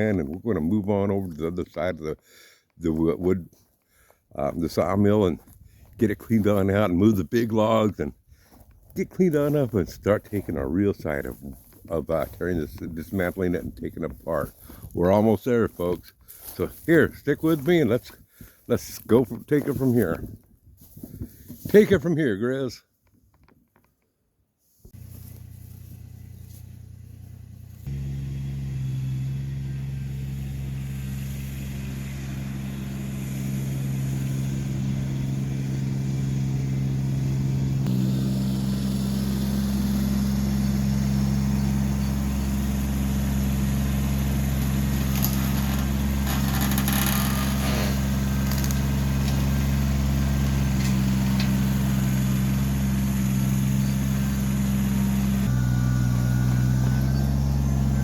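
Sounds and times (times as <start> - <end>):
machine engine running: 25.0 - 58.0
brief scrapes or cracks: 45.0 - 48.8.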